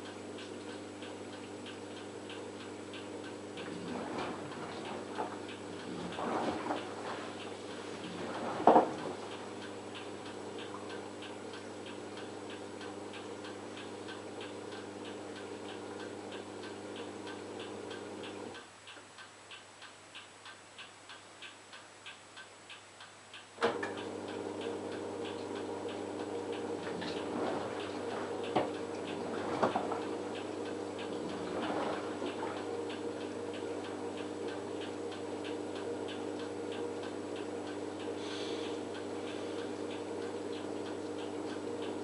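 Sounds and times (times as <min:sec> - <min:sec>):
washing machine motor humming: 0:00.0 - 0:18.6, 0:23.6 - 0:42.0
washing machine click: 0:03.6 - 0:11.0, 0:23.6 - 0:25.6, 0:26.2 - 0:42.0
steady ticking: 0:09.3 - 0:42.0
water swishing: 0:26.9 - 0:32.9.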